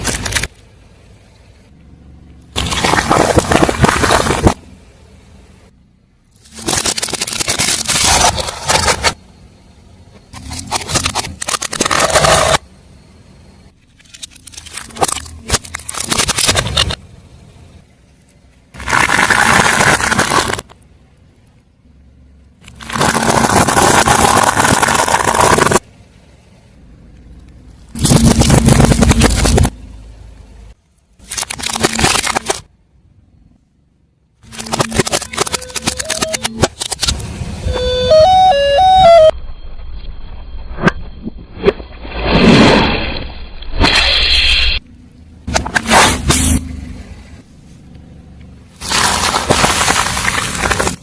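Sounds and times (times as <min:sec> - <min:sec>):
tyre crushing crunchy objects: 0:22.7 - 0:25.8, 0:48.8 - 0:51.0.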